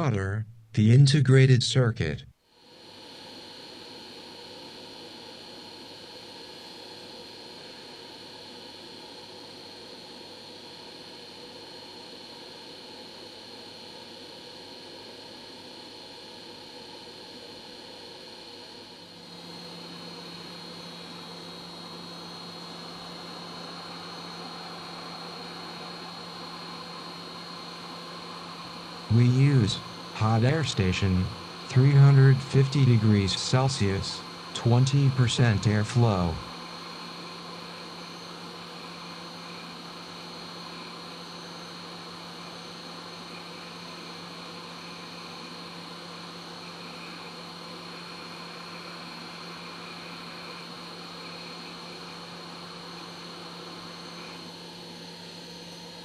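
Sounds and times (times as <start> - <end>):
hot air station hum: 0.0 - 56.0
low hum: 28.6 - 36.6.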